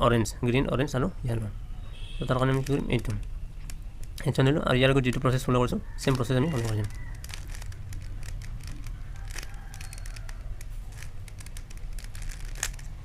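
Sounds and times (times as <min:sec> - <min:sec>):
puzzle cube plastic clicks: 0:02.5 - 0:04.3, 0:06.0 - 0:13.0.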